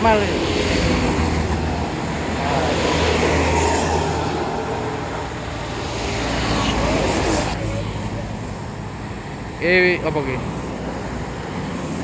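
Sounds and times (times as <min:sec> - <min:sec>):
vehicle passing by: 0:00.1 - 0:08.2.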